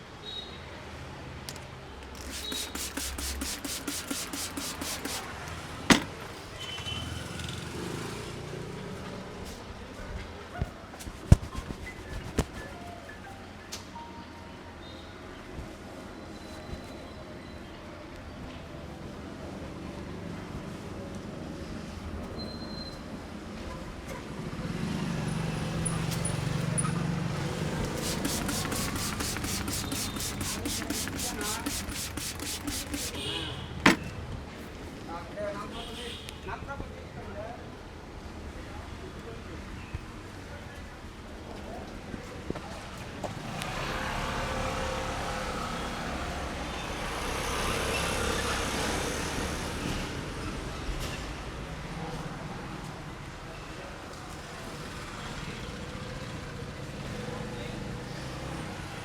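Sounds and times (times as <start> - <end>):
hands tapping on head: 2.2 - 5.2, 11.1 - 12.8, 27.9 - 33.3.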